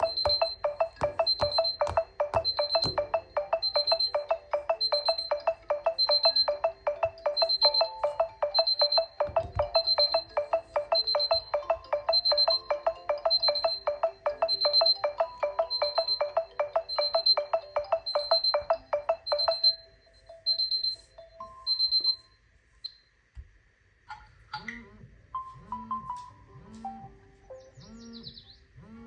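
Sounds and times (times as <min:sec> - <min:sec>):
high beep: 0:00.0 - 0:22.3
plucked electronic ringtone notes: 0:00.0 - 0:22.3, 0:25.4 - 0:27.3.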